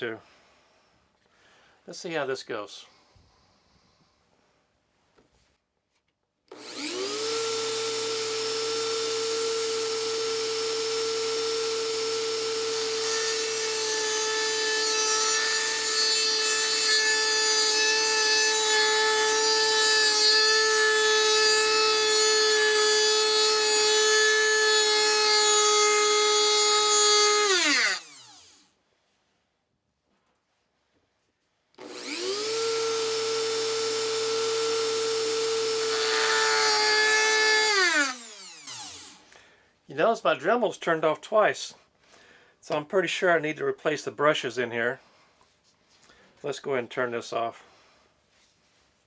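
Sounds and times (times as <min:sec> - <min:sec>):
rotary tool whining: 0:06.5 - 0:28.7, 0:31.8 - 0:39.3.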